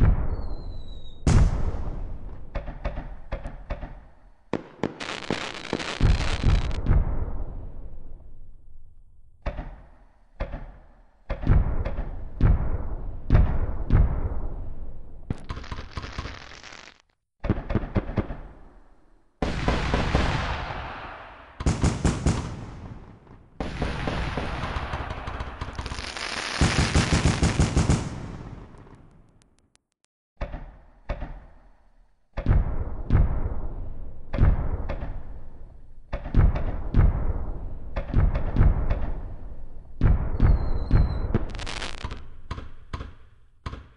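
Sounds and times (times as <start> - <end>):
loud firework bangs: 0.0 - 3.2, 4.5 - 7.2, 19.4 - 29.0, 40.0 - 42.2
rapid crackling firework shots: 4.5 - 7.2, 15.3 - 18.8, 19.4 - 29.1, 40.0 - 42.2.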